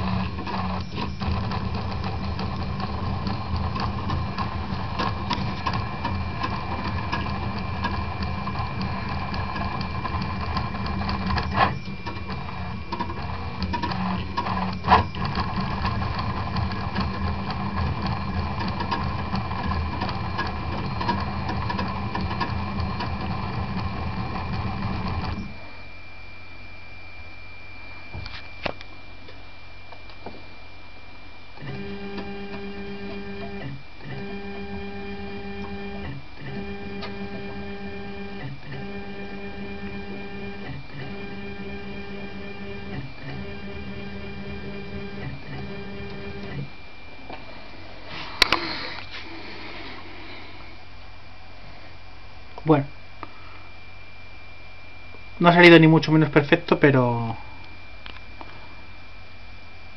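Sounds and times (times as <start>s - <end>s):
printer stepper motors: 0.0s - 25.8s, 31.6s - 50.8s
quiet steady hum: 0.0s - 59.9s
steady high whine: 0.0s - 59.9s.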